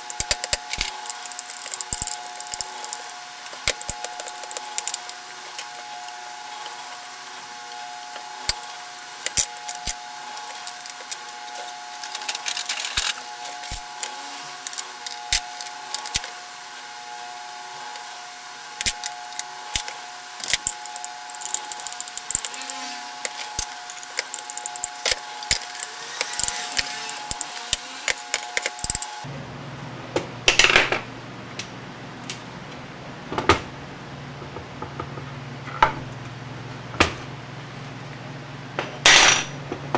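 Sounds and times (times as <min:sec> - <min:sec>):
small parts and tools rattling: 0:00.0 - 0:16.5, 0:17.7 - 0:29.3
steady whine: 0:00.0 - 0:30.4.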